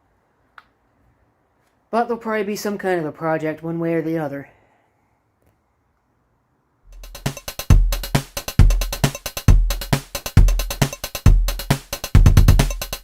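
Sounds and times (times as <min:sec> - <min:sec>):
drum machine kick: 0:06.9 - 0:13.0
electronic music: 0:06.9 - 0:13.0.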